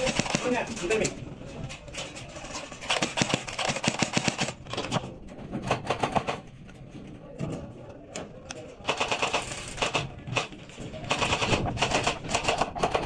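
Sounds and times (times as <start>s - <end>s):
airsoft guns firing: 0.0s - 0.8s, 2.8s - 5.0s, 8.9s - 13.0s.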